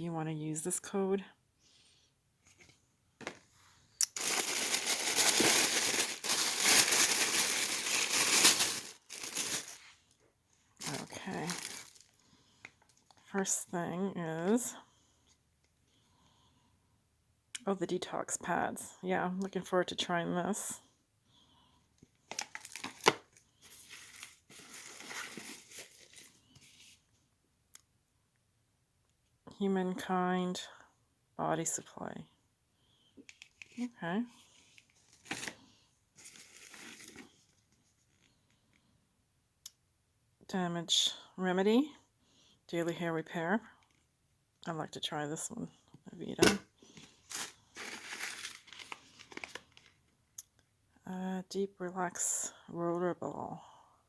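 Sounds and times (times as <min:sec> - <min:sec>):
packaging crinkling and rustling: 0:04.0 - 0:10.0, 0:10.8 - 0:13.0, 0:22.3 - 0:26.8, 0:34.8 - 0:35.6, 0:36.2 - 0:37.7, 0:46.4 - 0:50.1.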